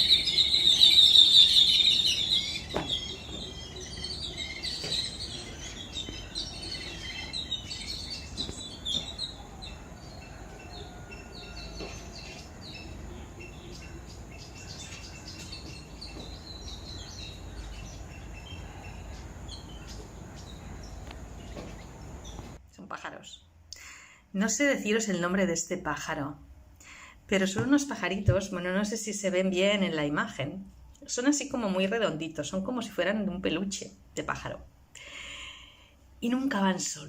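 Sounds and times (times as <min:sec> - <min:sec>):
small birds chirping: 0:00.0 - 0:23.9.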